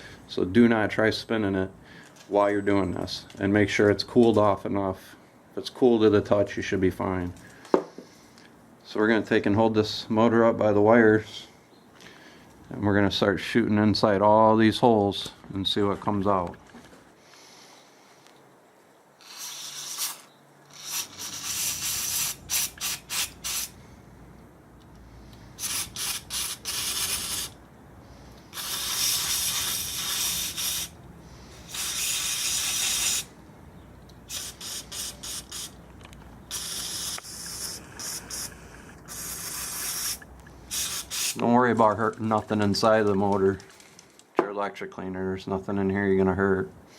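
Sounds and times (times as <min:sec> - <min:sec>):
aerosol spray hissing: 0:19.2 - 0:23.8, 0:25.6 - 0:27.6, 0:28.4 - 0:33.3, 0:34.3 - 0:35.8, 0:36.4 - 0:41.4.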